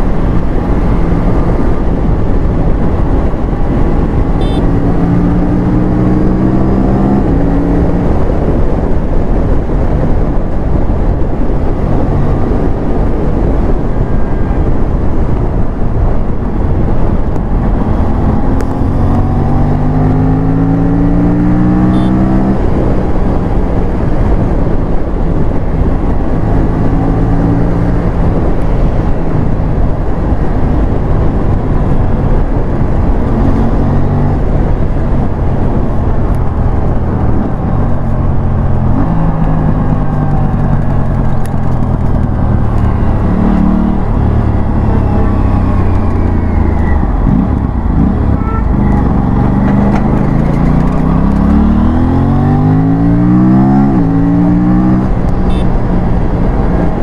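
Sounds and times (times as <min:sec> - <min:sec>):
motorcycle engine accelerating: 0:00.0 - 0:57.0
wind noise: 0:00.0 - 0:57.0.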